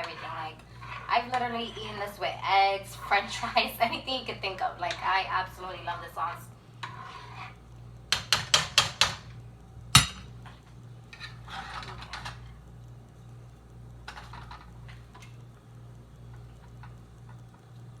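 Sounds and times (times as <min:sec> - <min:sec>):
utensil scraping pot: 0:00.0 - 0:05.1, 0:06.8 - 0:09.0, 0:11.1 - 0:12.4
utensil knocking against pot: 0:08.1 - 0:09.2.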